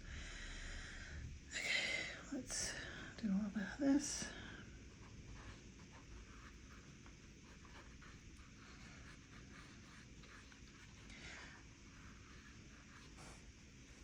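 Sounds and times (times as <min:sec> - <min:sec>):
low room hiss: 0:00.0 - 0:14.0
brush dabbing on paper: 0:04.9 - 0:14.0.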